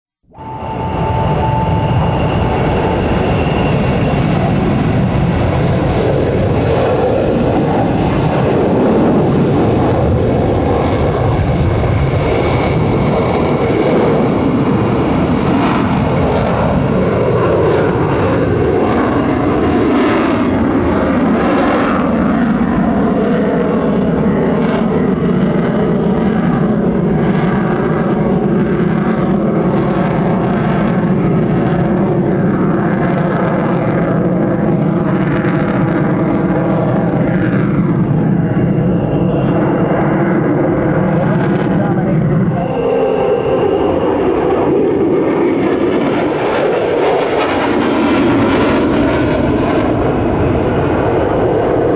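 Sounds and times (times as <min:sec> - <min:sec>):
jet engines roaring: 0:00.2 - 0:51.9.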